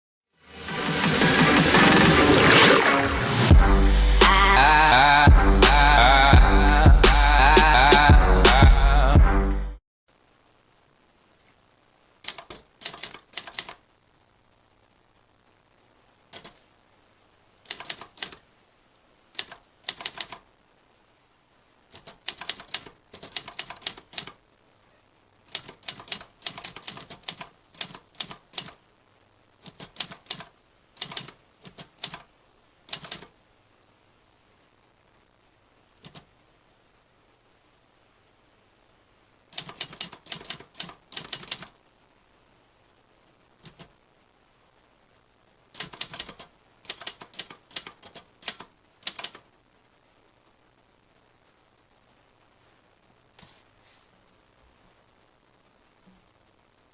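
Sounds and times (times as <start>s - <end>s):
typewriter keys clicking: 12.2s - 13.8s, 16.4s - 16.6s, 17.7s - 18.4s, 19.4s - 20.4s, 21.9s - 24.4s, 25.5s - 28.8s, 29.6s - 32.3s, 32.9s - 33.3s, 39.5s - 41.7s, 45.8s - 49.5s.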